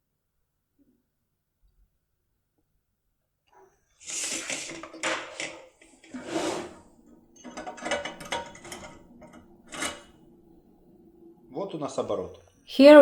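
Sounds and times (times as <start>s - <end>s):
metal tool scraping in a lock: 7.4s - 10.2s.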